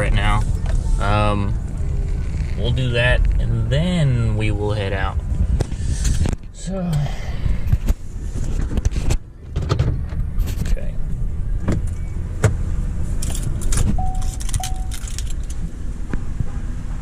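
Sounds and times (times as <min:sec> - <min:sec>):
steady low rumble: 0:00.0 - 0:17.0
keys jangling: 0:13.2 - 0:15.6
handling clicks and rattles: 0:13.2 - 0:15.7
short electronic beeps: 0:14.0 - 0:15.0.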